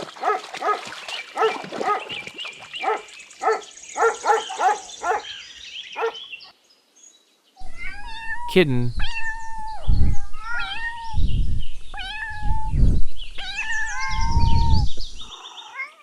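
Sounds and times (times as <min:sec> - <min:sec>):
dog barking: 0:00.2 - 0:02.2, 0:02.8 - 0:05.3, 0:06.0 - 0:06.2.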